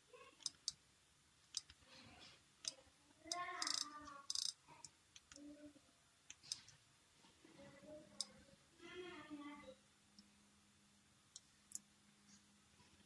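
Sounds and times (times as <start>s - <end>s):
small tools clicking and tapping: 0.4s - 0.8s, 2.6s - 4.6s
faint voice: 7.4s - 9.8s.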